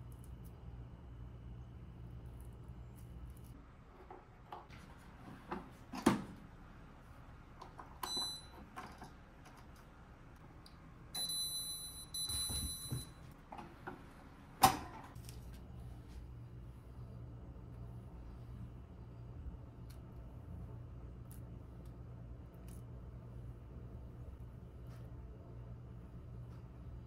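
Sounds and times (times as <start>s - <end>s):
appliance beeps: 8.0s - 8.9s, 11.1s - 13.4s.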